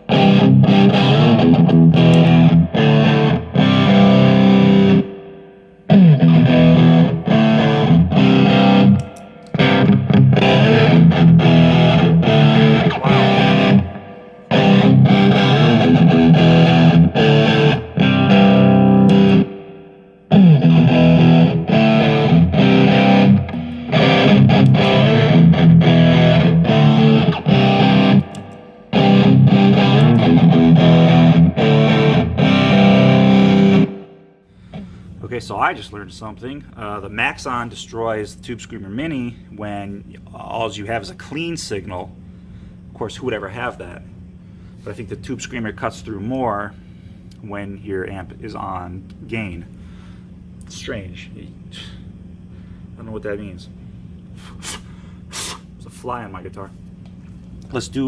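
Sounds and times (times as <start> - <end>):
distorted electric guitar riffs: 0.0 - 35.0.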